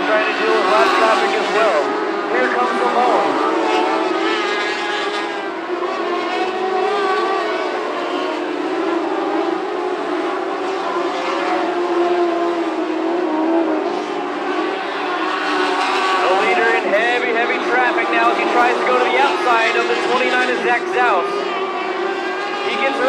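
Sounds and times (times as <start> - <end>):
racing car engines at high revs: 0.0 - 23.0.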